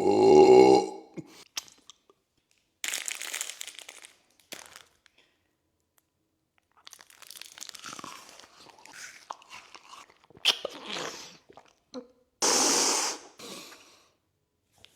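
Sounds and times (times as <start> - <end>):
chewing crisp food: 6.6 - 12.0
loud hissing burst: 12.4 - 13.3.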